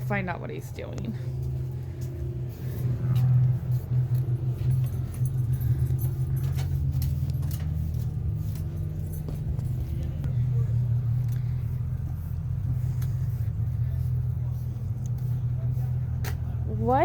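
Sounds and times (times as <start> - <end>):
car engine idling: 0.0 - 17.0
light clicks and rattles: 3.9 - 10.3.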